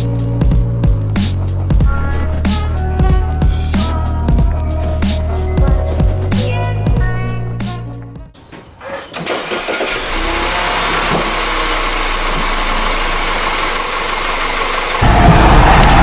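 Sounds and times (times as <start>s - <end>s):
car engine starting and running: 8.4s - 16.0s.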